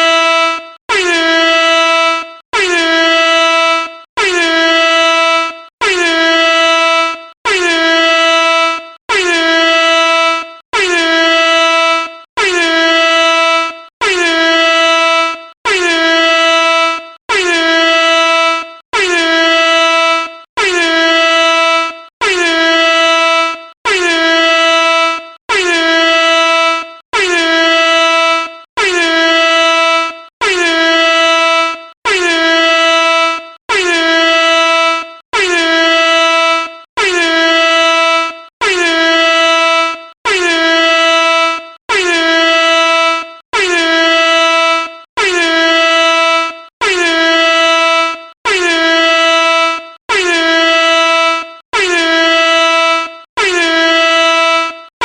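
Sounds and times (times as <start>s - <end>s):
air horn blasts: 0.0s - 55.0s.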